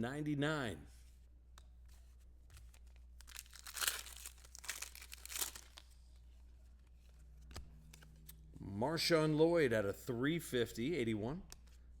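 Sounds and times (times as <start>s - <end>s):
card pack wrapper tearing and crinkling: 3.2s - 5.9s.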